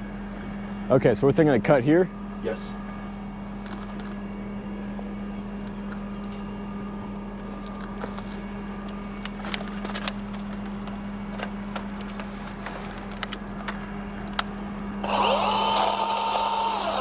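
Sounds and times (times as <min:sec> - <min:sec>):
truck engine humming: 0:15.0 - 0:17.0.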